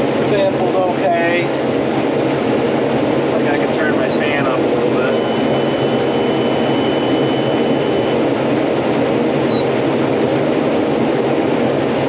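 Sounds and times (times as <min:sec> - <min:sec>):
harvesting machine engine drone: 0:00.0 - 0:12.0
faint high whine: 0:03.6 - 0:08.4.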